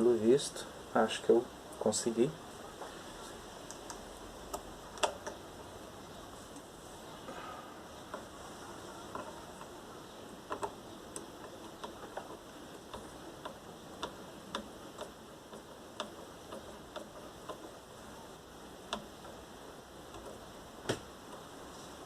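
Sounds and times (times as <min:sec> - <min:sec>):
small screws clicking on a workbench: 0:10.4 - 0:17.7.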